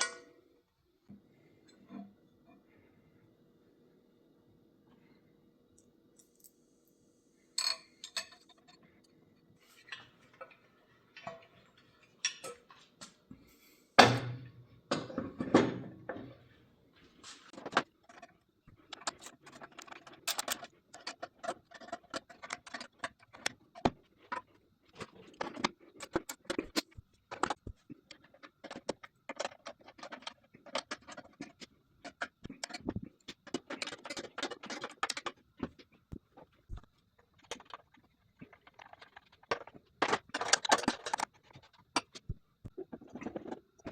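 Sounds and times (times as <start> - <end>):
metal parts and tools clinking: 7.6 - 8.8, 17.2 - 42.3.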